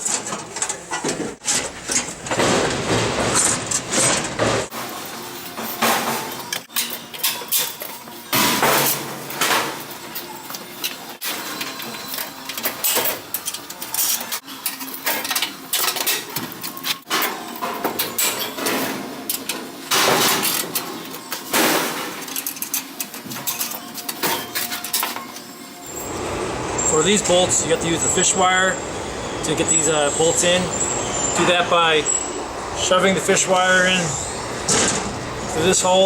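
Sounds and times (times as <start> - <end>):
metal tools clanking: 0.0 - 26.2.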